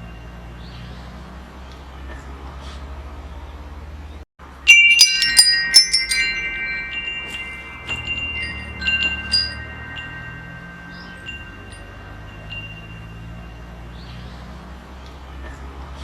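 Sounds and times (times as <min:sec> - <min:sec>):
metal wind chimes ringing: 0:00.0 - 0:01.0, 0:04.5 - 0:14.8.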